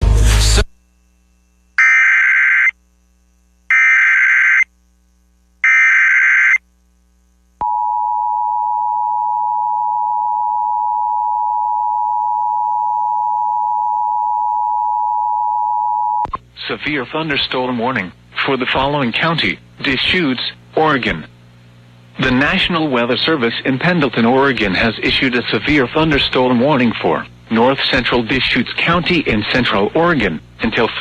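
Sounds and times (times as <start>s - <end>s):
screeching data bursts: 1.8s - 2.7s, 3.7s - 4.7s, 5.6s - 6.6s.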